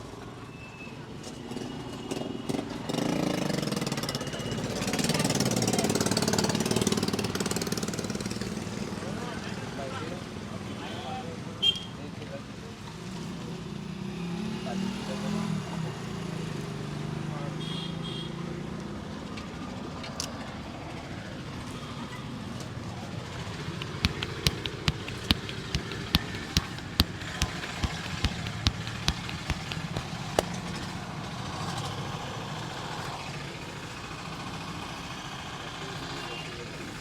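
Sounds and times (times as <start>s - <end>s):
hands slapping in massage: 23.8s - 30.6s.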